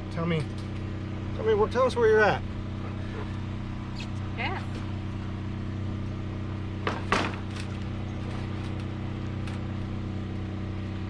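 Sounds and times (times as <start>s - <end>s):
low engine hum: 0.0s - 11.0s
sharp knocks: 6.8s - 7.5s.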